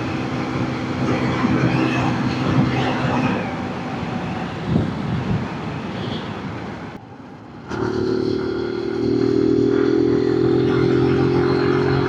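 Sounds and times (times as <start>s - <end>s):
wind and road noise: 0.0s - 12.0s
motorcycle engine drone: 7.4s - 12.0s.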